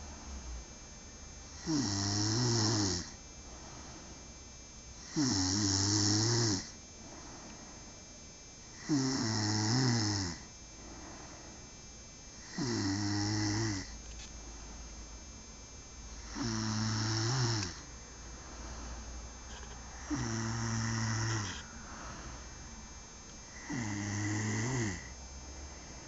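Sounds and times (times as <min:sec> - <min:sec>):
man snoring: 0:01.5 - 0:04.1, 0:05.0 - 0:07.5, 0:08.7 - 0:11.5, 0:12.3 - 0:14.0, 0:16.2 - 0:17.9, 0:20.0 - 0:22.3, 0:23.5 - 0:26.0
quiet breathing: 0:03.0 - 0:05.2, 0:06.6 - 0:09.0, 0:10.4 - 0:15.2, 0:16.1 - 0:26.0.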